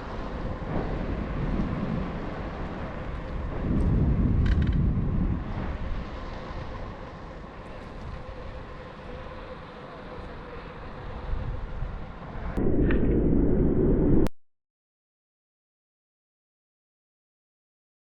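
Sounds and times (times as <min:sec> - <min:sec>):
moving vehicle rumble: 0:00.0 - 0:13.3.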